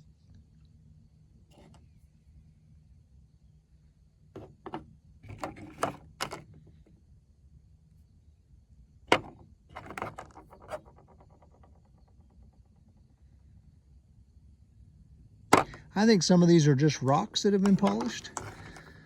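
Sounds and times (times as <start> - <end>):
stones clicking together: 17.6 - 19.0.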